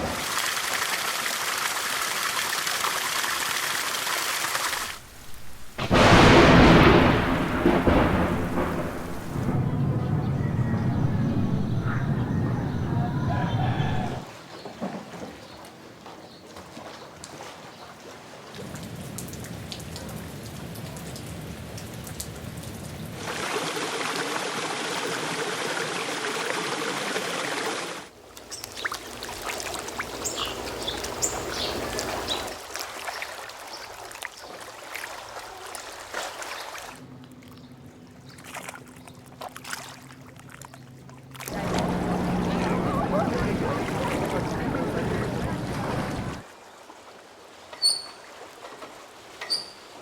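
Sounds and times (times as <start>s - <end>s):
water rushing: 0.0s - 14.3s, 23.1s - 37.0s, 41.5s - 47.6s
outdoor background ambience: 3.2s - 50.0s.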